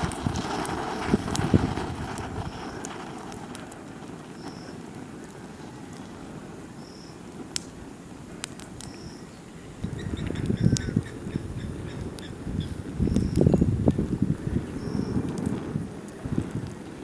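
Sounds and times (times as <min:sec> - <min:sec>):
sharp clicks: 0:07.5 - 0:07.8.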